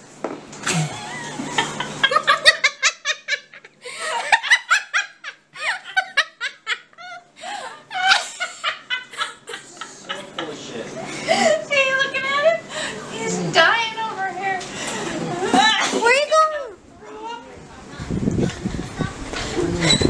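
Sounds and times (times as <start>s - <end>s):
hearty laughter: 0.7s - 11.6s.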